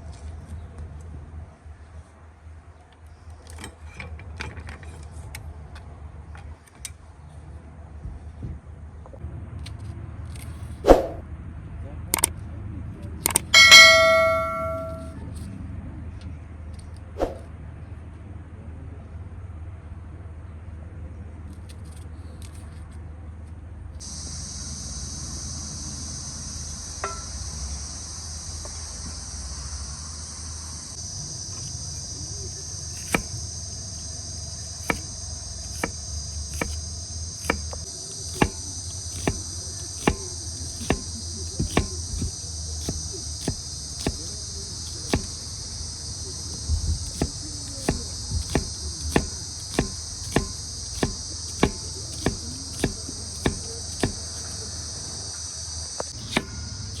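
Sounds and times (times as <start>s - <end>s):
crickets chirping: 13.3s - 15.1s, 24.0s - 57.0s
sharp knocks: 13.6s - 15.1s, 38.4s - 44.3s, 46.6s - 54.4s.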